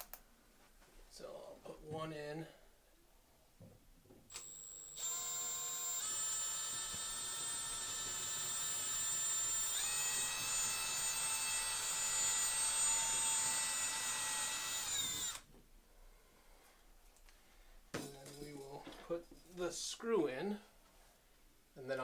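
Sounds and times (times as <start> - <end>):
power drill drilling into wood: 4.3 - 15.4.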